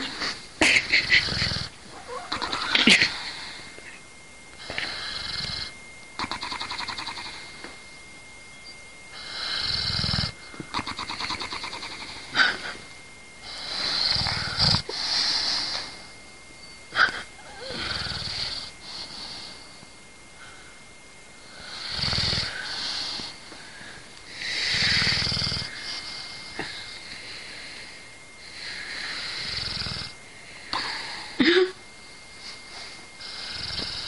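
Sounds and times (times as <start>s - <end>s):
dog snoring: 0.0s - 3.6s, 4.6s - 7.6s, 9.1s - 12.8s, 13.4s - 16.1s, 16.9s - 19.7s, 21.4s - 23.4s, 24.3s - 30.2s, 33.2s - 34.0s.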